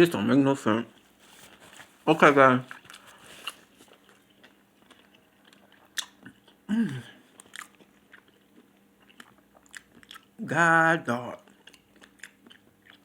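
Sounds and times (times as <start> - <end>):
person chewing food: 2.7 - 10.4, 11.4 - 13.0.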